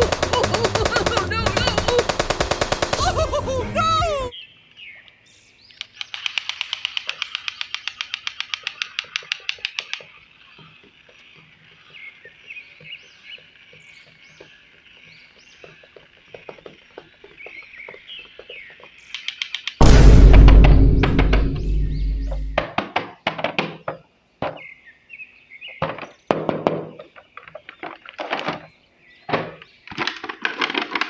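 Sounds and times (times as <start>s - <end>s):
birds chirping faintly: 4.0s - 19.8s
fast rattle of clicks: 5.8s - 10.1s, 19.1s - 19.8s, 29.9s - 31.0s.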